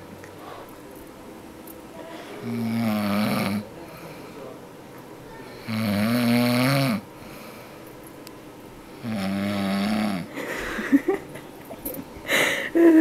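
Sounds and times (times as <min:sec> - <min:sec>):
woman snoring: 0:02.4 - 0:03.6, 0:05.6 - 0:07.0, 0:09.0 - 0:10.3.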